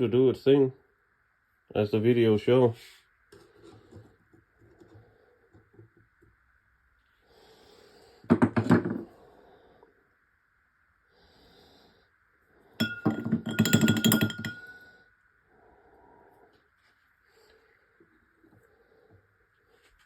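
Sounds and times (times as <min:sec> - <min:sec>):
faint ringing tone: 0:12.4 - 0:16.5
screwdriver clinking against glass: 0:12.8 - 0:14.8.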